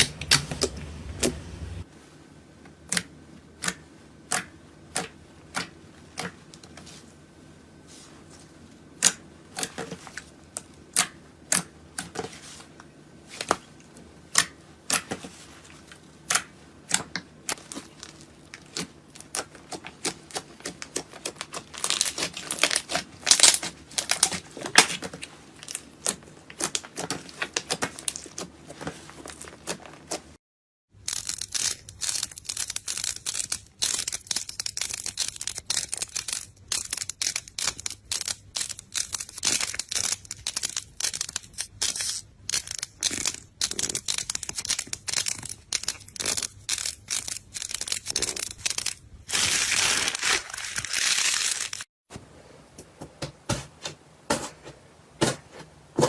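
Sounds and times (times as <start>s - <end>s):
slime crackling and popping: 16.3s - 25.0s, 31.0s - 51.8s.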